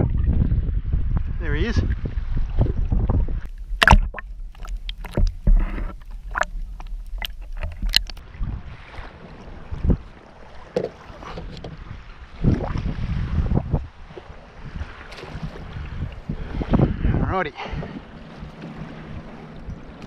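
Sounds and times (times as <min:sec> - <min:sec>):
water against hull: 0:00.0 - 0:20.0
wind rumble on microphone: 0:00.0 - 0:20.0
clicks and knocks on kayak: 0:03.4 - 0:08.2, 0:10.7 - 0:11.8.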